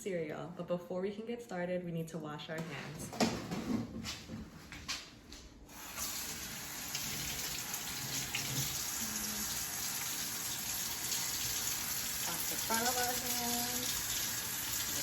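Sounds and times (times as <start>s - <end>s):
faucet turned on: 5.7s - 15.0s
water running into sink: 5.7s - 15.0s.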